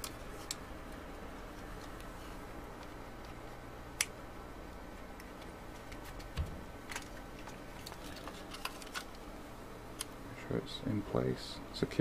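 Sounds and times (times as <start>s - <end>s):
plastic parts being handled: 5.2s - 9.2s.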